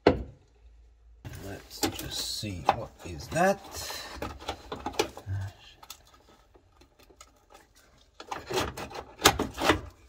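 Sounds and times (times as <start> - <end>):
person speaking: 1.3 - 6.0.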